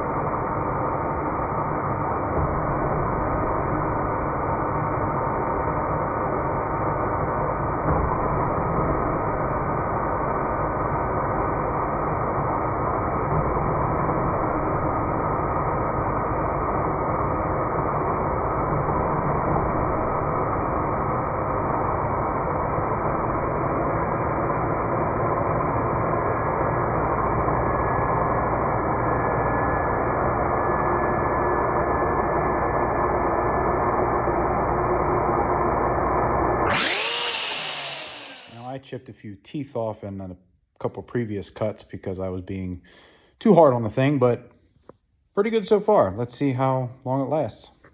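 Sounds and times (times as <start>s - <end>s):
slowed bandsaw cutting pipe: 36.5s - 38.7s.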